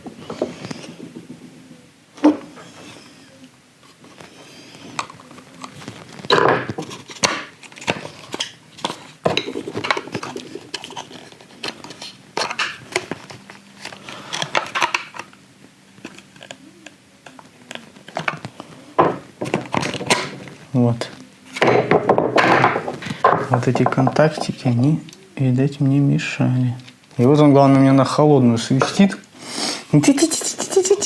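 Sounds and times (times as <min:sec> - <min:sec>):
plastic clicking and scraping: 0:04.9 - 0:15.4.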